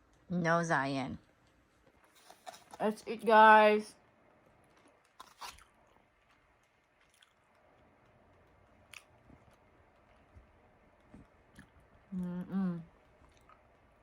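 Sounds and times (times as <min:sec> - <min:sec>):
chewing and mouth clicks: 0:04.5 - 0:12.1, 0:12.9 - 0:14.0.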